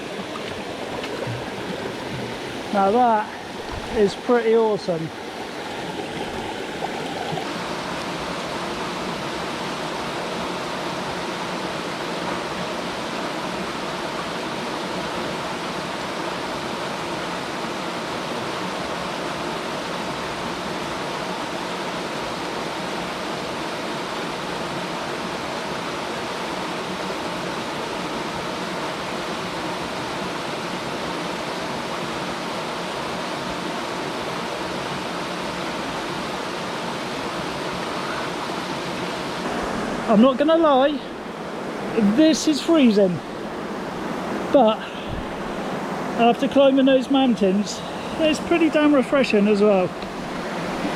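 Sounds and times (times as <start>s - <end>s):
waterfall pouring into pool: 0.0s - 7.6s.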